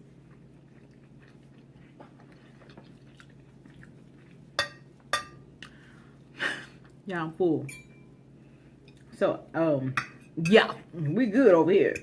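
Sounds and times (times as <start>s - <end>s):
soft chewing: 0.0s - 7.0s, 8.5s - 9.2s.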